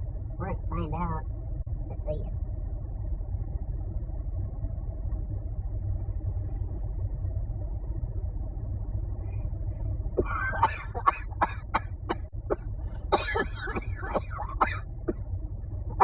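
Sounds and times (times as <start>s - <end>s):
low rumble: 0.0s - 16.0s
man coughing hard: 10.2s - 14.8s.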